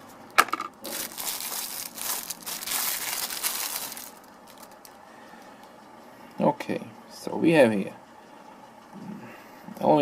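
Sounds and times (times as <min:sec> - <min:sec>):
packaging crinkling: 0:00.3 - 0:05.0.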